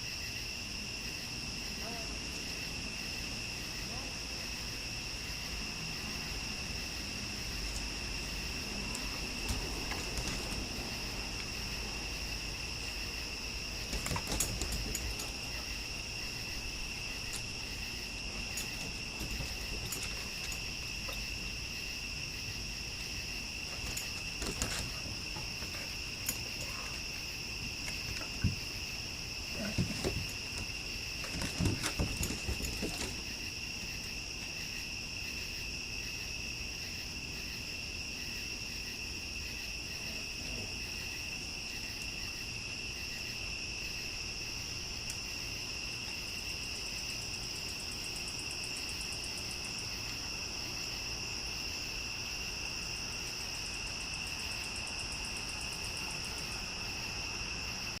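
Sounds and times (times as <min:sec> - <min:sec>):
night insect chorus trilling: 0:00.0 - 0:58.0
thumps and scuffles: 0:08.8 - 0:10.8, 0:23.7 - 0:27.0, 0:29.5 - 0:33.3.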